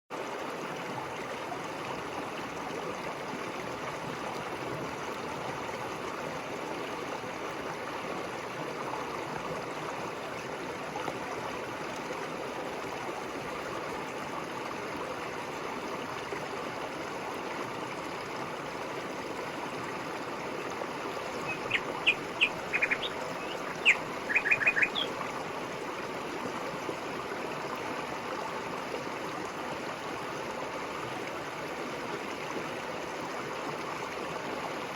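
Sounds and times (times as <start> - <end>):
river water rushing: 18.2 - 34.1
small bird chirping: 21.4 - 25.2.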